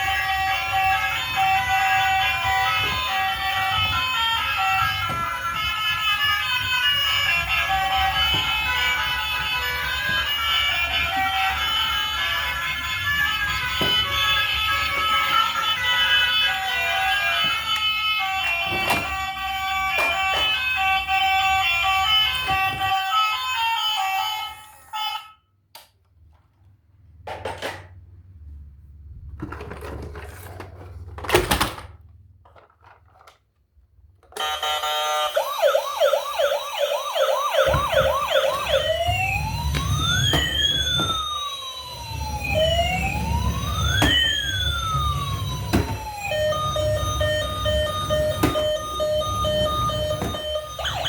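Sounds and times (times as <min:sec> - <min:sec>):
electronic siren yelp: 0:00.0 - 0:25.4, 0:34.4 - 0:51.0
siren wail in two tones: 0:34.4 - 0:51.0.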